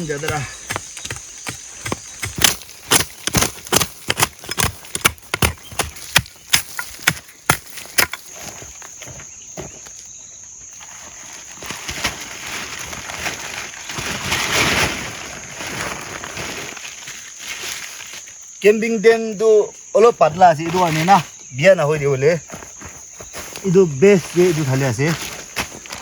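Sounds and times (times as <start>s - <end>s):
crickets chirping: 0.0s - 26.0s.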